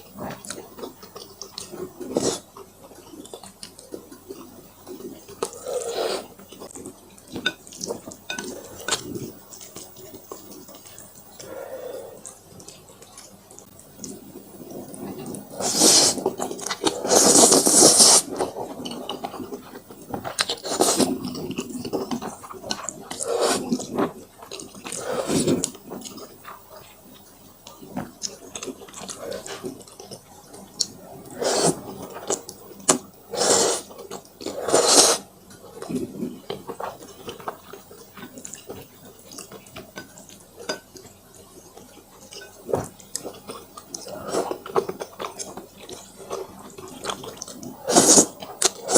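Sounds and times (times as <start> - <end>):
chewing: 0.0 - 48.9
person slurping noodles: 2.1 - 2.5, 5.5 - 6.4, 15.2 - 18.6, 20.6 - 21.2, 23.2 - 24.0, 24.9 - 25.7, 31.2 - 35.3, 47.6 - 48.9.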